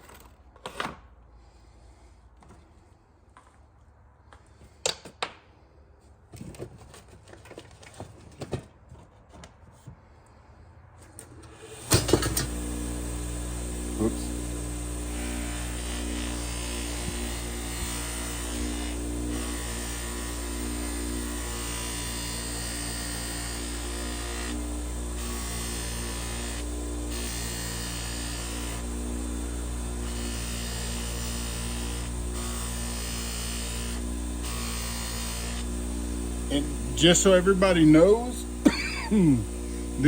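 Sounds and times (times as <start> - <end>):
bench grinder humming: 11.4 - 40.0
knife blade hissing on buffing wheel: 12.7 - 40.0.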